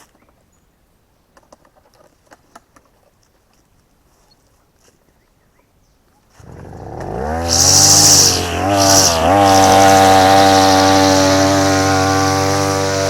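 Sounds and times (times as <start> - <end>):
brush cutter engine revving: 6.4 - 13.0.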